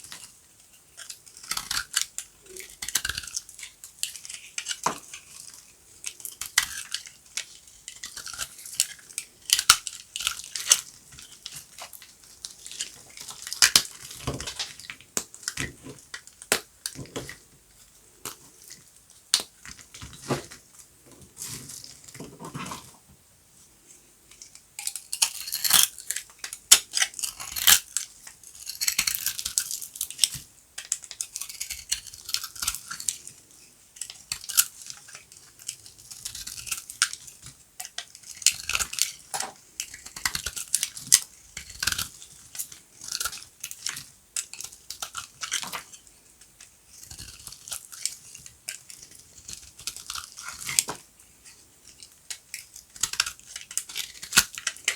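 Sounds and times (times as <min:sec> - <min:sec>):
bar soap crunching as it is cut: 0:01.0 - 0:05.4, 0:25.2 - 0:30.2, 0:37.8 - 0:45.9, 0:52.9 - 0:54.9.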